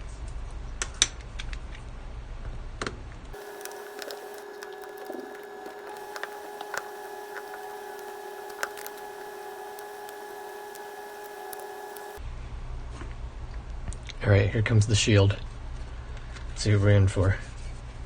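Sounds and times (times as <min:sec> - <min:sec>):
steady tonal hum: 0:03.4 - 0:12.2.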